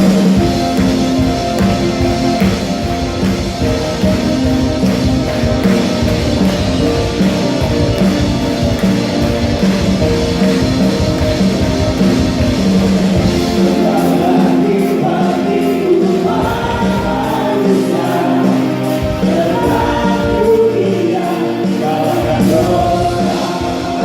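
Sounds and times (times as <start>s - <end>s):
drums: 0.0s - 24.0s
guitar: 0.0s - 24.0s
choir singing in unison: 13.2s - 24.0s.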